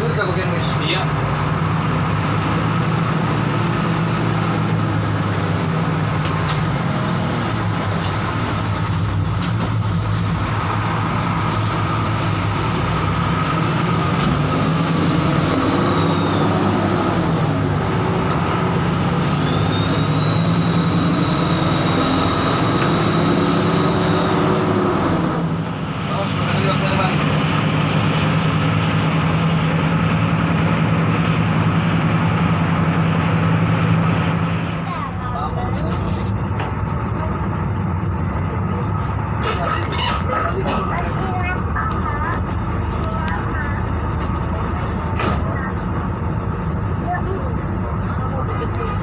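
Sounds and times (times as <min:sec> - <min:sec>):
bus diesel engine running: 0:00.0 - 0:49.0.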